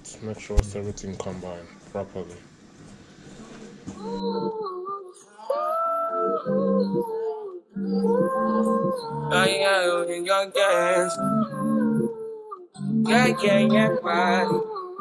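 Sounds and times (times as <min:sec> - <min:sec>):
song with sung vocals: 0:03.8 - 0:15.0.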